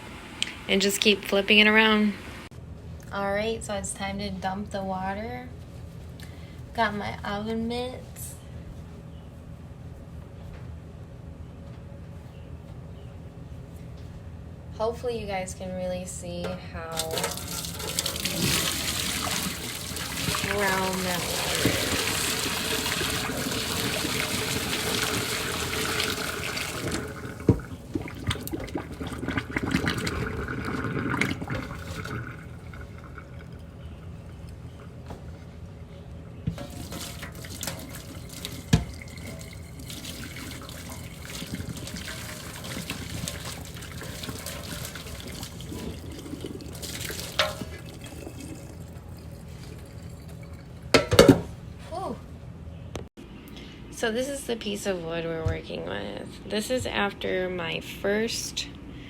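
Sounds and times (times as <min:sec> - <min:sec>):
water pouring into sink: 0:17.0 - 0:33.6, 0:36.5 - 0:50.8
pot clicks and knocks: 0:36.5 - 0:45.5, 0:46.8 - 0:48.7, 0:50.3 - 0:51.5.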